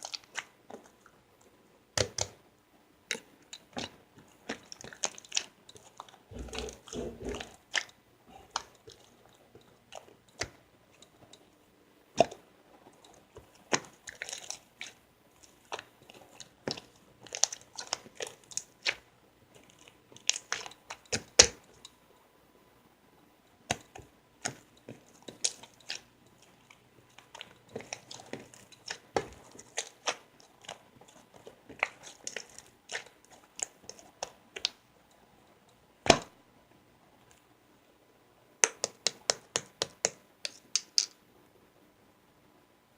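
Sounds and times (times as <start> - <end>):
crunchy chewing: 3.1 - 11.4, 12.2 - 21.9, 23.7 - 34.8.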